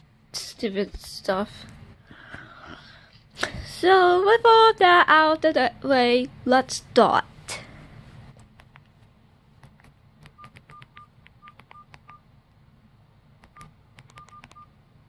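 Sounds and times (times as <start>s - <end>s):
phone keypad button clicks: 10.2s - 12.2s, 13.4s - 14.6s.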